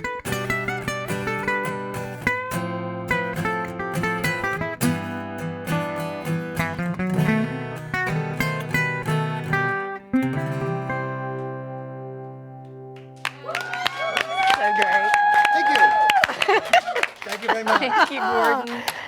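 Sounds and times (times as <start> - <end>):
acoustic guitar playing: 0.0 - 13.4.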